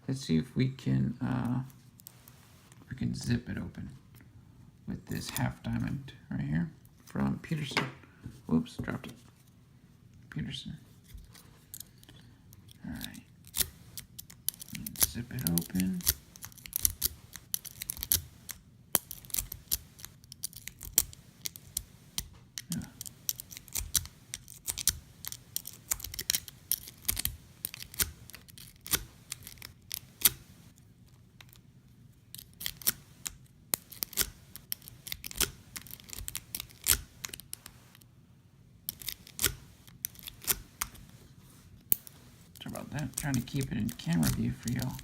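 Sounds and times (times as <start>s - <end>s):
lock pick metallic clicks and scrapes: 11.1s - 30.5s, 38.9s - 41.0s.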